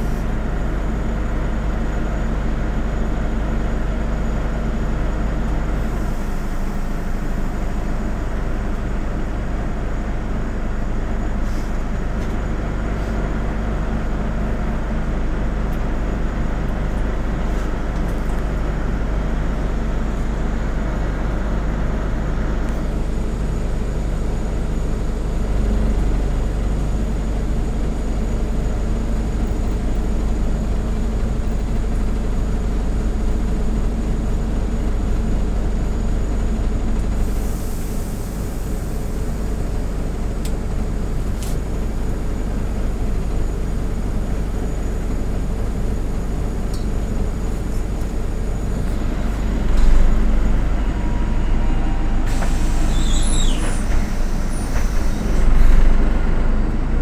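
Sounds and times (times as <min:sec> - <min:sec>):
bus engine and road rumble: 0:00.0 - 0:57.0.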